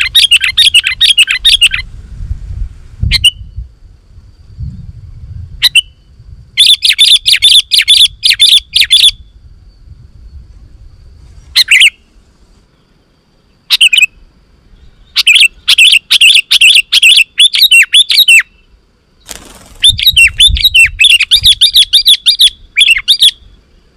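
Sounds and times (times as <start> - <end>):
bird chattering calls: 0.0 - 1.9, 6.6 - 9.2, 11.6 - 12.1, 13.7 - 14.2, 15.0 - 23.6
short bird calls: 11.5 - 12.2, 14.8 - 23.9.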